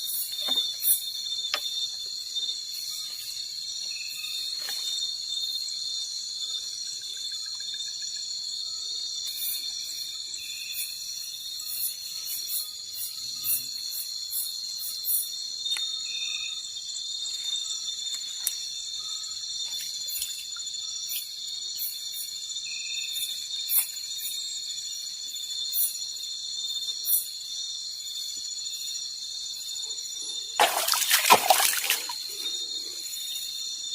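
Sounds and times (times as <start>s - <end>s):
insect chirps and clicks: 0.0s - 33.9s
crickets shrilling: 15.1s - 33.9s.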